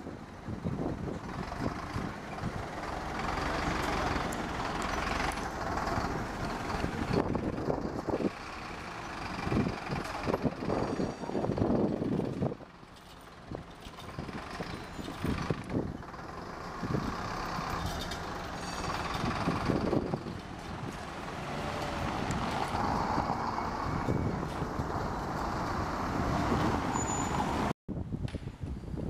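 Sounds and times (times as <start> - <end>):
engine rumble of heavy vehicles: 0.0 - 29.0.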